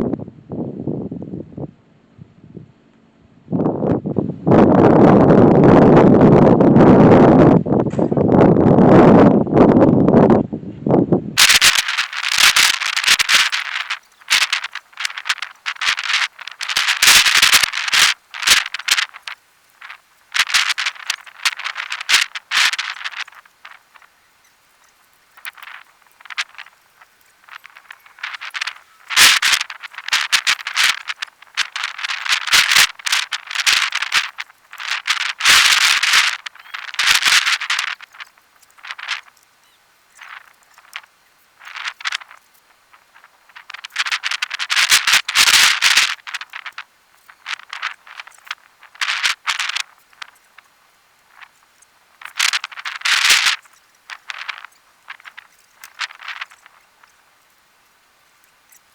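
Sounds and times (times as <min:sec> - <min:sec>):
rattling and scraping: 0:11.4 - 0:57.6.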